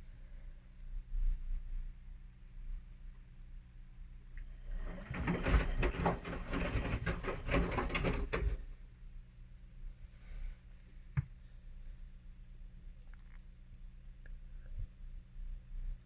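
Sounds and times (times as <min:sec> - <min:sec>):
washing machine hum: 0:04.4 - 0:08.9
laundry tumbling in drum: 0:04.7 - 0:08.7.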